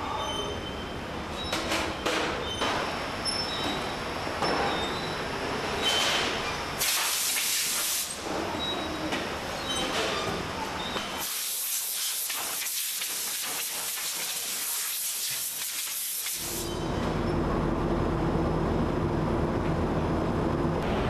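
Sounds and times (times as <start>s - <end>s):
low machine hum: 16.7s - 21.0s.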